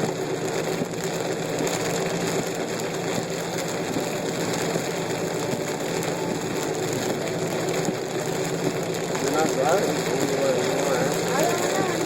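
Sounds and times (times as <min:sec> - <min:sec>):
car engine and tyres running: 0:00.0 - 0:12.0
heavy rain on a car: 0:00.0 - 0:12.0.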